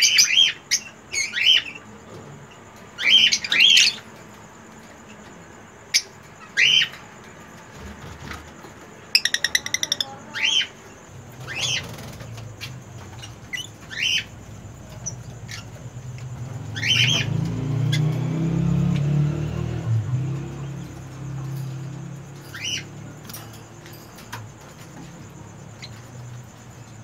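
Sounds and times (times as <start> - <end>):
lovebirds chirping shrilly: 3.0 - 4.1, 5.9 - 7.0, 9.2 - 18.2, 20.6 - 24.8
bird chattering: 9.2 - 10.8, 16.6 - 17.3, 20.7 - 23.9.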